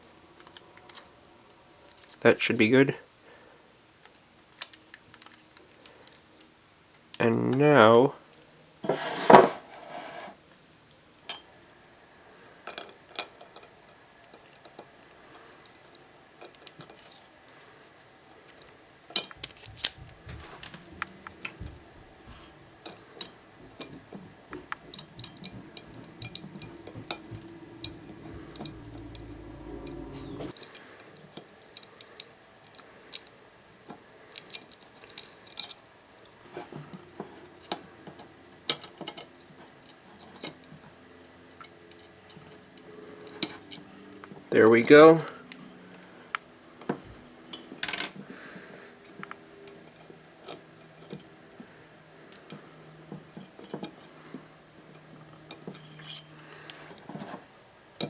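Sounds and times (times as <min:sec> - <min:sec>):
low steady hum: 0:19.4 - 0:30.5.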